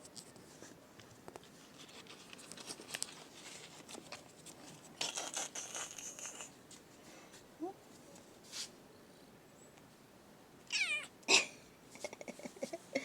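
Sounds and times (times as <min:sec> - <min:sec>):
rustling and crinkling: 0:00.0 - 0:08.8.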